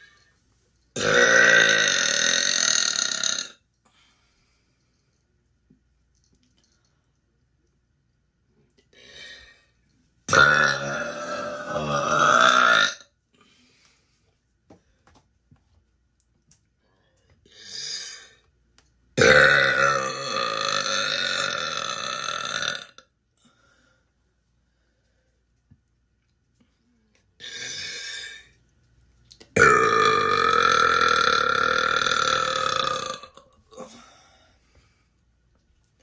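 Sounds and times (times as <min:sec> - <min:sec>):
woman burping loudly: 0:01.0 - 0:03.6, 0:10.3 - 0:13.1, 0:19.2 - 0:23.0, 0:29.6 - 0:34.0.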